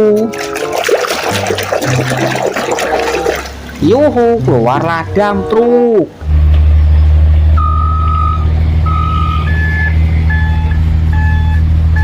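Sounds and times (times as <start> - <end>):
truck engine rumbling: 3.0 - 12.0
reversing alarm beeps: 7.6 - 12.0.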